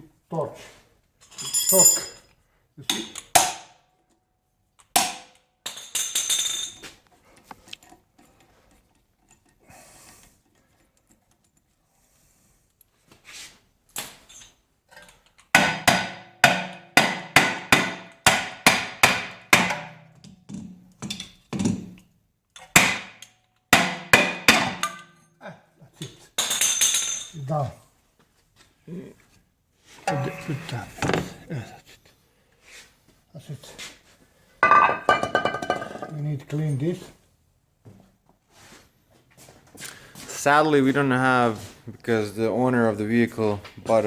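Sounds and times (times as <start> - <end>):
hammer striking metal: 5.0 - 5.3, 15.6 - 20.0, 23.8 - 25.2.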